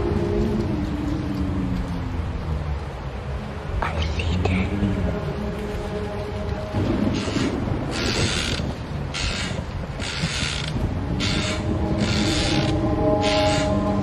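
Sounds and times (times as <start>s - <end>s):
low steady drone: 0.0s - 14.0s
rhythmic rasping creak: 7.1s - 14.0s.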